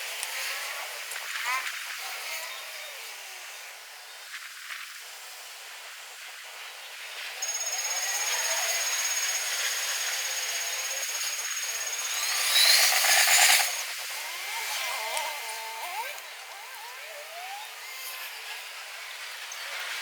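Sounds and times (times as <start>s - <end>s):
electric train whine: 7.4s - 17.8s.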